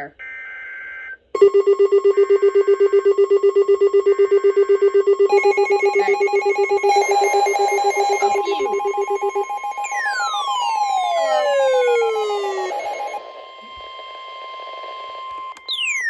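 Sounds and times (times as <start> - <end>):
pulsing electronic alarm beep: 0.2 - 15.1
steady alert tones: 4.2 - 13.8
warbling data tones: 5.3 - 16.0.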